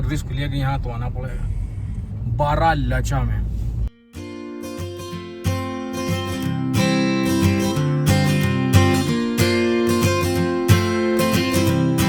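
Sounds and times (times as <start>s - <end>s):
strummed acoustic guitar: 3.9s - 12.0s.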